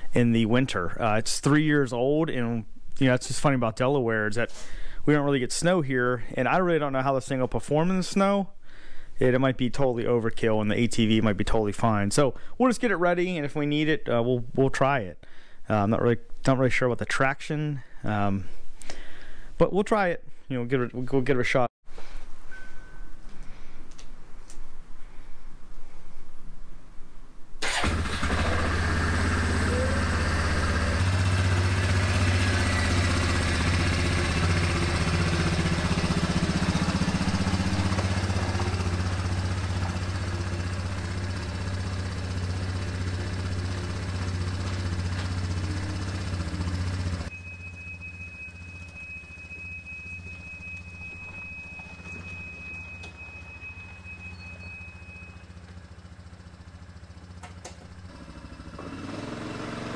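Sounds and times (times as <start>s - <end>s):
engine running: 27.6s - 59.9s
thin high whine: 45.6s - 55.6s.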